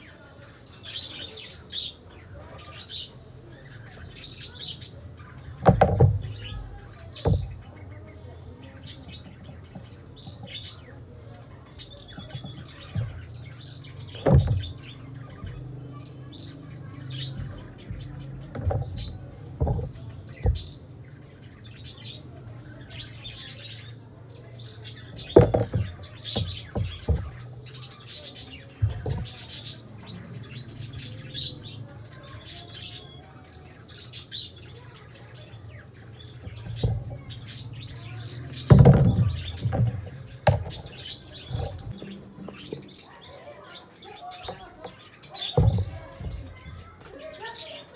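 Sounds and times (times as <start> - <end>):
small birds chirping: 0.0 - 47.9
dull knocks: 5.6 - 7.7, 12.1 - 15.8, 17.0 - 20.8, 25.1 - 27.8, 28.8 - 29.6, 36.4 - 42.9, 44.4 - 47.0.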